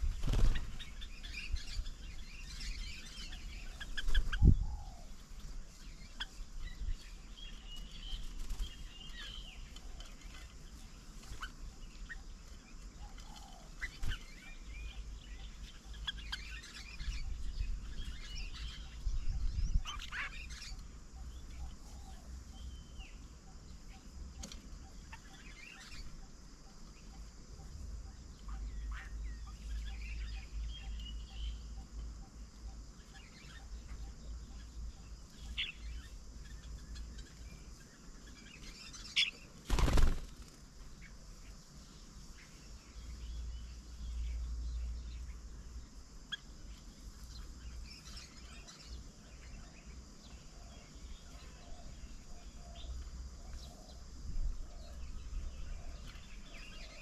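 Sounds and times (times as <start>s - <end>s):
wings flapping: 0.0s - 0.9s, 8.2s - 8.8s, 39.6s - 40.7s
birds chirping and calling: 0.0s - 57.0s.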